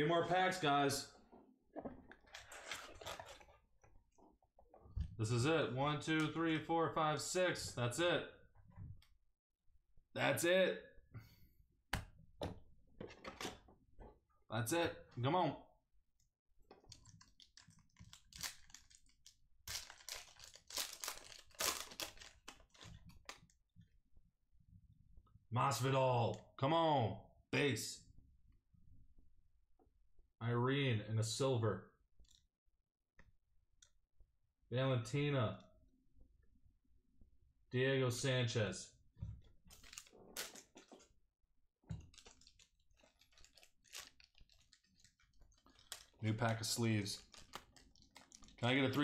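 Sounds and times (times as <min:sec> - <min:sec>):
cards rustling and clicking: 0:16.7 - 0:23.5, 0:39.7 - 0:41.1, 0:42.0 - 0:49.0.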